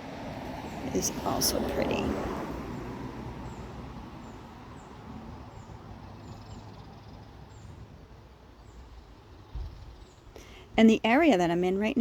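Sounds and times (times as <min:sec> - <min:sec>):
vehicle passing: 0:00.0 - 0:08.8
highway traffic hum: 0:00.0 - 0:12.0
small bird chirping: 0:03.4 - 0:07.8, 0:08.6 - 0:10.5.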